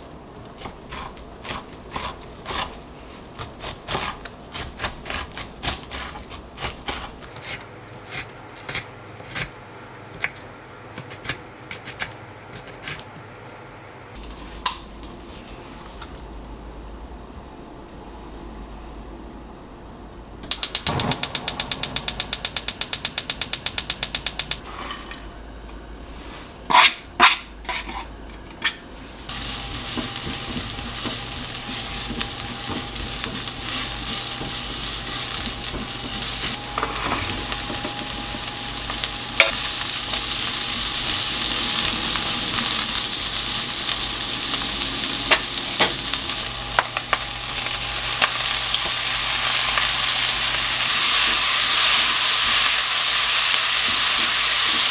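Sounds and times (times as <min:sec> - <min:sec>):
rapid even clicking: 0:20.4 - 0:24.6
food sizzling in a pan: 0:29.3 - 0:54.9.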